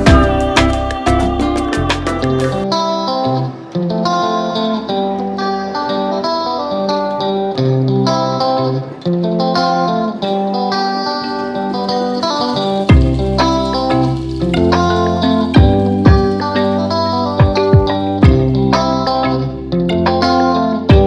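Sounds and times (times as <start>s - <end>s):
plucked guitar melody: 0.0s - 21.0s.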